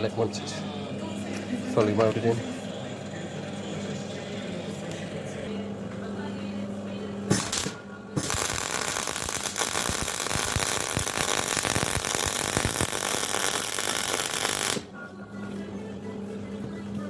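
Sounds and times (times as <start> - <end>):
welding arc crackling: 7.3 - 14.9.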